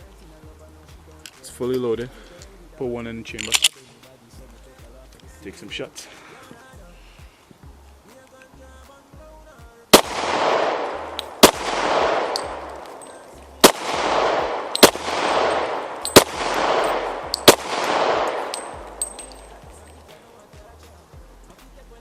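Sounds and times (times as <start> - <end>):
pistol shots with echo: 9.9 - 20.3.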